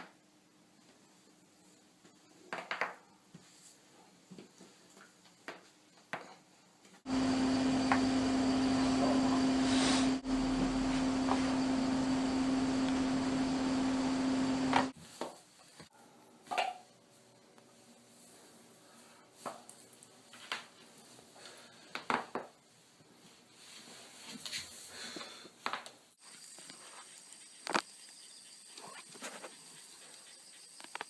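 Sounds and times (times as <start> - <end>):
loud steady hum: 7.1 - 15.0.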